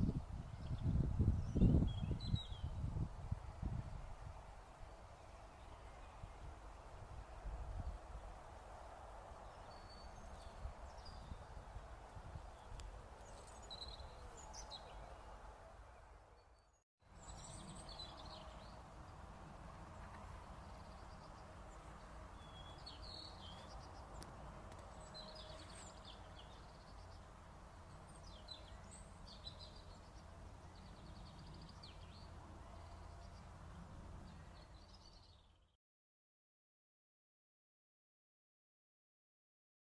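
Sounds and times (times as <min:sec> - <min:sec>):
birds chirping: 0:19.9 - 0:35.7.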